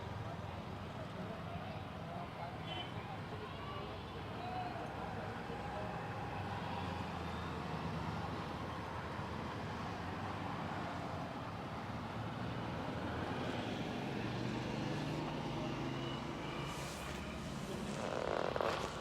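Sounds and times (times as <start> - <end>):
traffic engine hum: 11.6 - 19.0.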